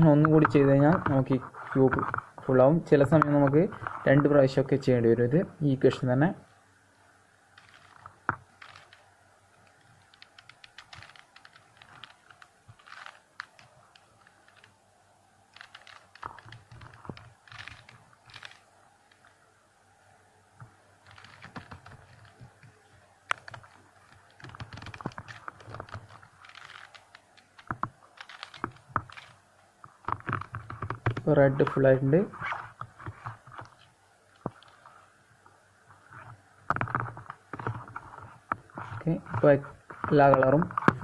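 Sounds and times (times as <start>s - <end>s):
puzzle cube clicking as turned: 7.6s - 14.8s, 15.5s - 19.3s, 21.0s - 29.4s.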